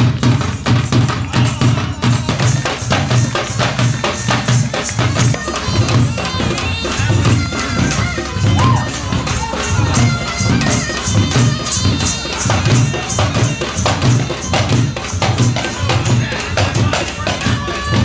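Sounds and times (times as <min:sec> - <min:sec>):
drums steady beat: 0:00.0 - 0:18.0
sharp percussion strokes: 0:00.0 - 0:18.0.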